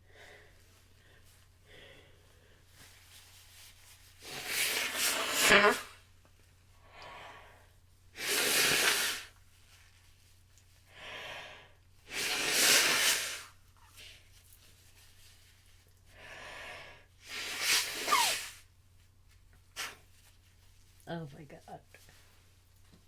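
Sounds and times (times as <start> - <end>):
person breathing hard: 0.0 - 2.8, 10.9 - 11.8, 16.1 - 17.2
loud breathy sneezes: 4.2 - 6.0, 8.2 - 9.4, 12.1 - 14.1, 17.2 - 18.6, 19.7 - 20.1.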